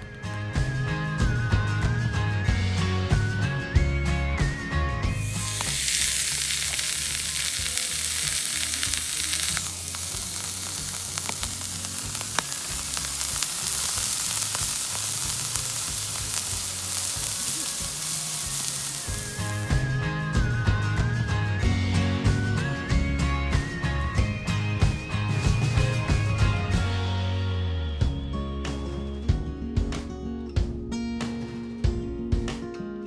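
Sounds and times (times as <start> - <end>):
food sizzling in a pan: 5.2 - 19.8.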